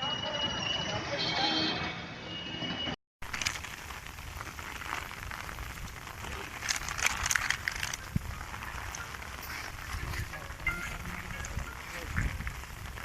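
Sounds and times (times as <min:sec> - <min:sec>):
rain patter: 0:03.2 - 0:13.0.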